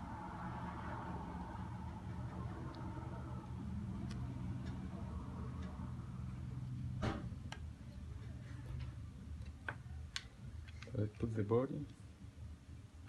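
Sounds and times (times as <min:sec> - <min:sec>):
low hum: 0:00.0 - 0:09.6.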